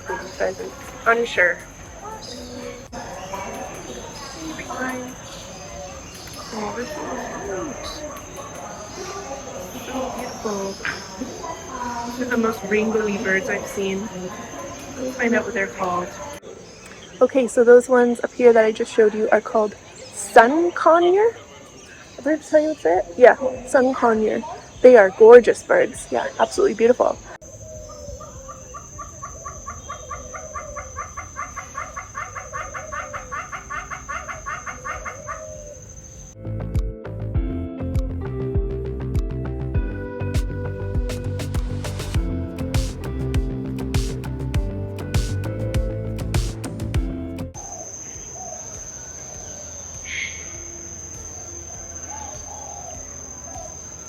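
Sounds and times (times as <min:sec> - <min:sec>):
high-pitched insect drone: 0:00.0 - 0:16.4, 0:47.6 - 0:54.0
birds warbling: 0:00.0 - 0:36.4, 0:40.7 - 0:54.0
bird clucking call: 0:27.4 - 0:36.1
sharp bird call: 0:47.6 - 0:54.0.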